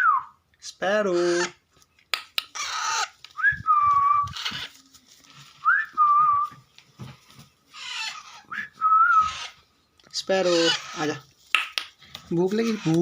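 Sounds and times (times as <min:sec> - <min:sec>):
raspy hissing calls: 0:10.2 - 0:11.3.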